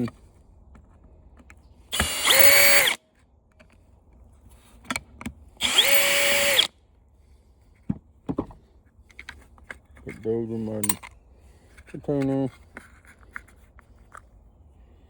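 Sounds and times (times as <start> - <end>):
electric screw gun running: 1.9 - 3.0, 5.6 - 6.7.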